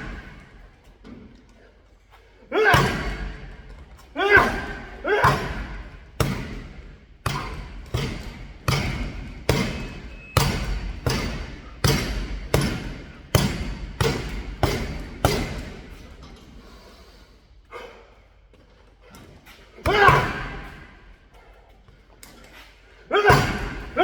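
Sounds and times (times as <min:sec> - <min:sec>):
punches thudding on punch bag: 0:02.6 - 0:16.1, 0:19.8 - 0:20.9, 0:23.2 - 0:24.0.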